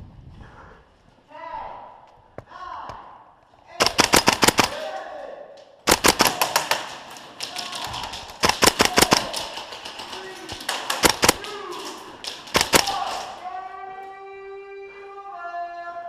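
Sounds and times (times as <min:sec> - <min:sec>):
airsoft rifle bursts: 0:03.8 - 0:05.0, 0:05.9 - 0:13.4.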